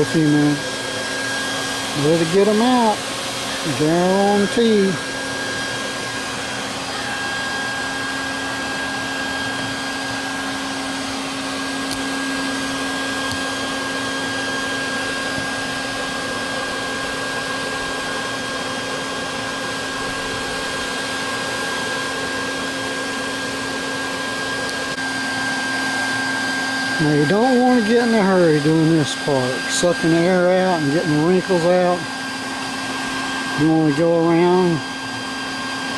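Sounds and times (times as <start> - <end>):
vacuum cleaner humming and whining: 0.0 - 35.9.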